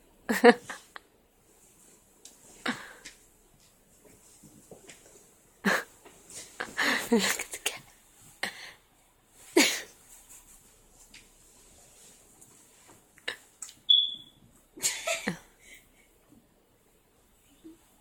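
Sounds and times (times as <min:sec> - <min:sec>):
short high beep: 0:13.9 - 0:14.4.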